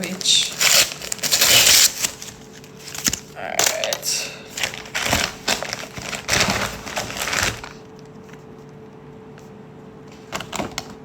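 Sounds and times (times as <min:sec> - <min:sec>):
packaging crackling and tearing: 0:00.0 - 0:08.5
faint steady hum: 0:00.0 - 0:11.0.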